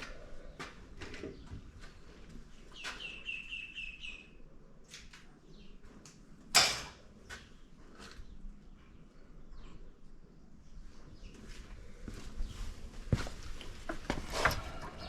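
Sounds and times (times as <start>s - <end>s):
bird chirping: 2.7s - 4.4s
loud metal clank: 6.6s - 7.0s.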